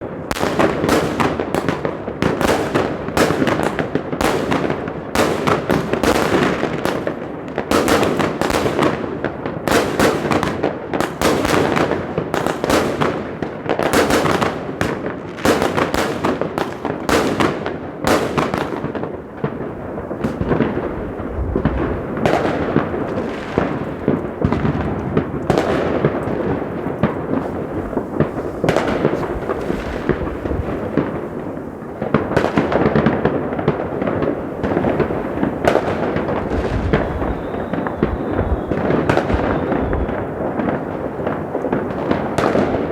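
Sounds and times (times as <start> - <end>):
fireworks bangs and crackling: 0.0 - 42.9.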